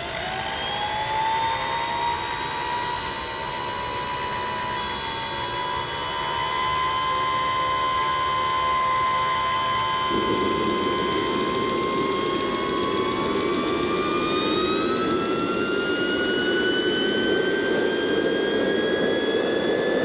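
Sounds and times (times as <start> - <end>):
turbojet engine whine: 0.0 - 20.0
rough rushing sound: 10.1 - 16.2.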